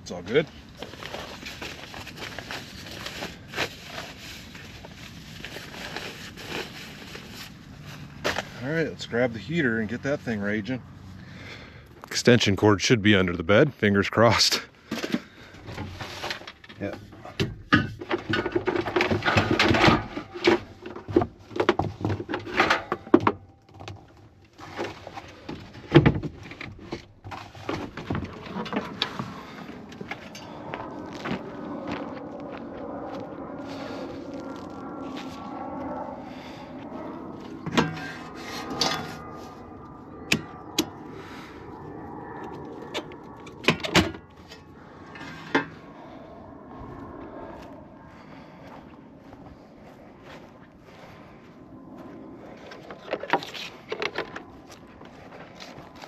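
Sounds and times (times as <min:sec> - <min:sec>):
camping gear rustling and clicking: 0:00.3 - 0:08.6, 0:14.8 - 0:46.0, 0:52.4 - 0:56.0.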